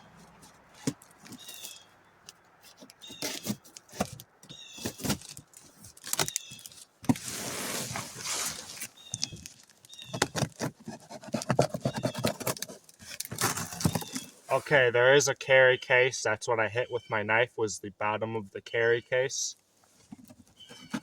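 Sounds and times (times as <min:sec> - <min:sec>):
cardboard box being handled: 0:02.7 - 0:14.5
cardboard tearing: 0:04.8 - 0:14.3.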